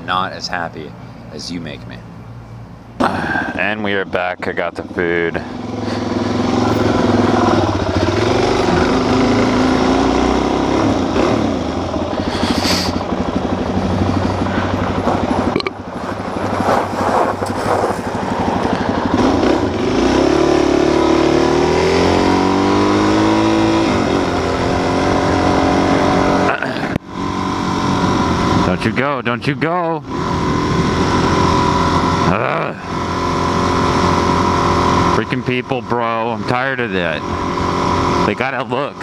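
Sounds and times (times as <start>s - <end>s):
motorcycle engine running: 3.0s - 39.0s
wind noise: 14.1s - 19.4s.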